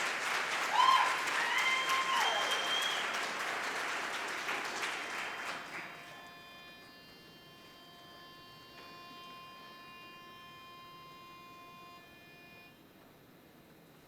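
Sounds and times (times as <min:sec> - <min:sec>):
audience applause: 0:00.0 - 0:06.3
high whoop: 0:00.7 - 0:03.1.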